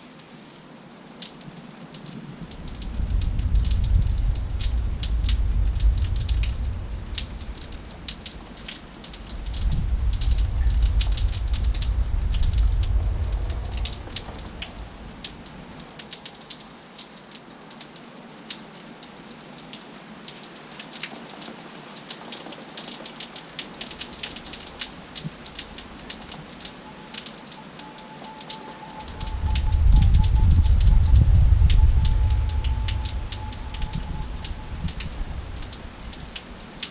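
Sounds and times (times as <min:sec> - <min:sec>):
rain drops ticking: 0:00.0 - 0:36.9
wind buffeting microphone: 0:02.5 - 0:15.8, 0:29.0 - 0:36.7.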